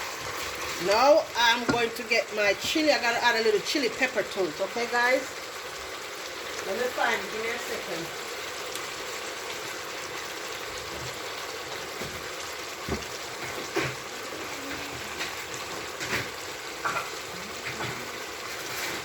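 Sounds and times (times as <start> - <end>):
chicken sizzling in oil: 0.0 - 19.0
pot knocks and clatters: 1.6 - 2.0.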